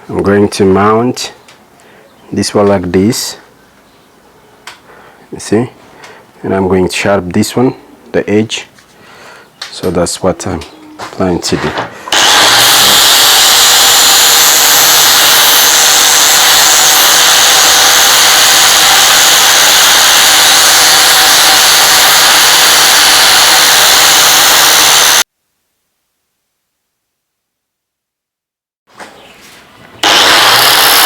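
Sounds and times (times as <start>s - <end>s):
electric grinder whirring: 12.1s - 25.2s, 30.0s - 31.0s.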